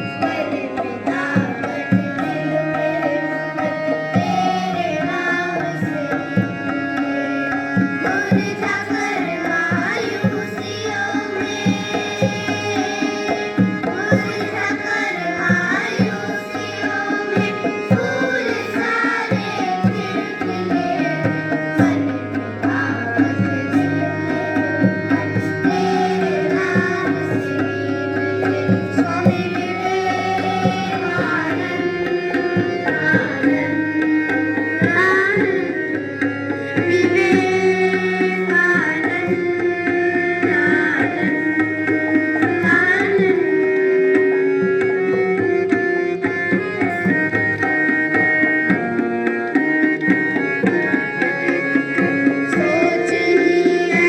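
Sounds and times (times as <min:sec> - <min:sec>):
person singing: 0:52.6 - 0:54.0.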